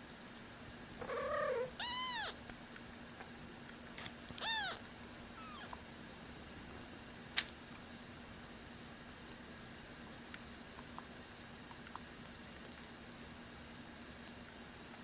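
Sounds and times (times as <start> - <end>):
kittens mewing: 1.0 - 2.4, 4.4 - 5.8.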